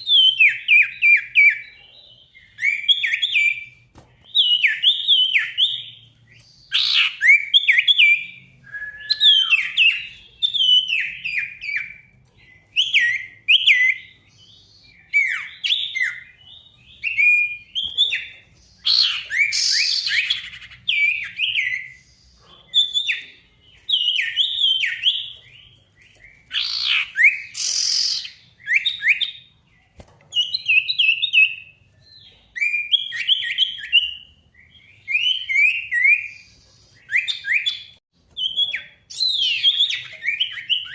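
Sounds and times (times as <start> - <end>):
songbird singing whistled notes: 0.0 - 40.9
raspy bird calls: 6.6 - 12.1, 17.0 - 31.7.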